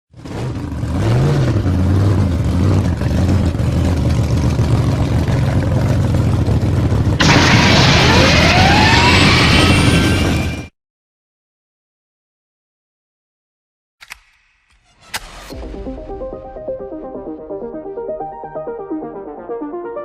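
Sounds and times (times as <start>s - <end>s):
engine running and revving: 0.1s - 10.7s.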